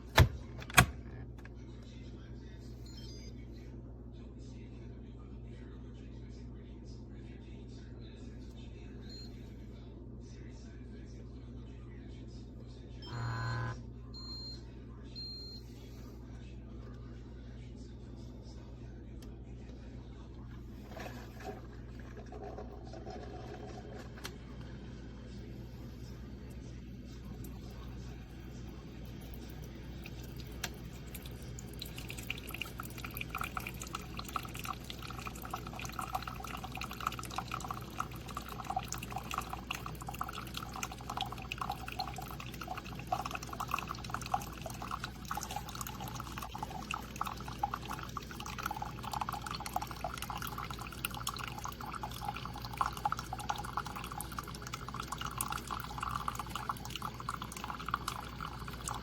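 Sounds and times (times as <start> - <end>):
liquid pouring into container: 20.8 - 24.7, 27.1 - 59.0.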